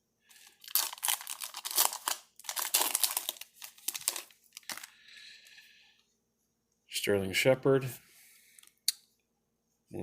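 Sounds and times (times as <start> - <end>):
plastic wrapper crinkling: 0.3 - 5.1.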